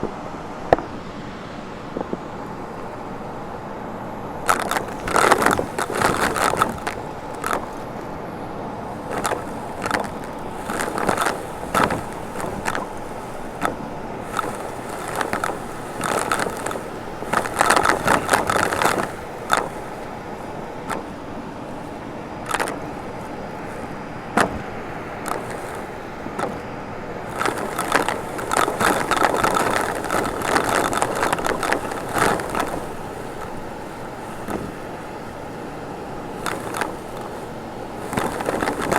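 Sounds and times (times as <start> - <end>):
crackling and rattling clicks: 4.4 - 38.9.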